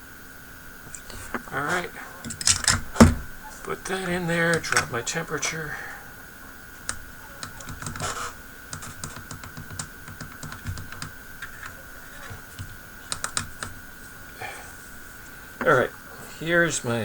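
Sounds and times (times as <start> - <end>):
faint high whine: 0.0 - 17.0
small tools clicking and tapping: 2.2 - 3.8, 6.8 - 13.8.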